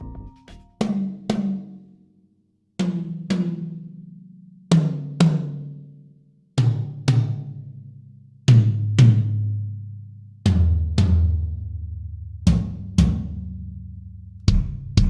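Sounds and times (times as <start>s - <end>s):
tom drums struck and ringing: 0.0s - 1.6s.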